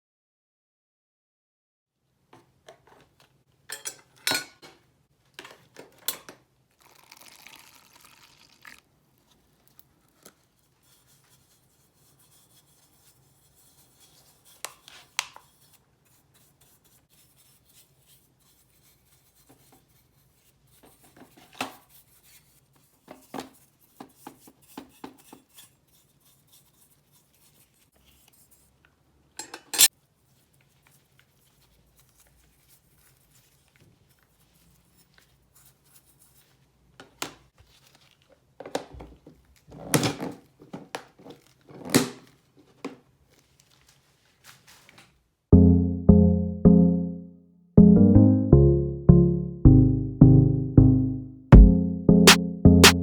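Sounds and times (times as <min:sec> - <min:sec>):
scraping rustle: 0:43.3 - 0:45.1.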